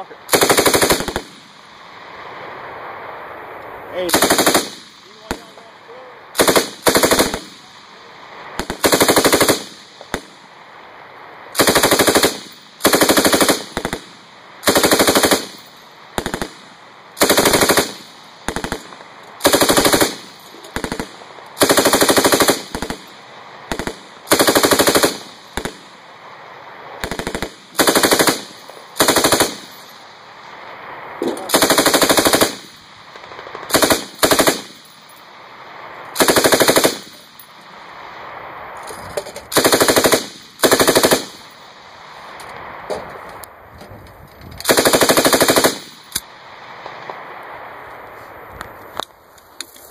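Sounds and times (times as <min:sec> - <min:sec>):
machine gun bursts: 0:00.3 - 0:01.3, 0:04.1 - 0:05.4, 0:06.4 - 0:07.5, 0:08.6 - 0:09.8, 0:11.6 - 0:16.6, 0:17.2 - 0:23.1, 0:23.7 - 0:25.8, 0:27.0 - 0:29.9, 0:31.4 - 0:32.7, 0:33.7 - 0:34.8, 0:36.2 - 0:37.3, 0:39.5 - 0:41.4, 0:44.6 - 0:46.0.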